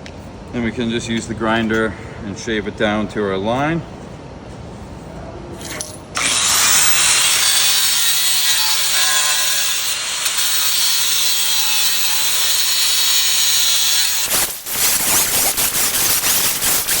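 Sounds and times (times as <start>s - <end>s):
angle grinder grinding tile: 6.2s - 17.0s.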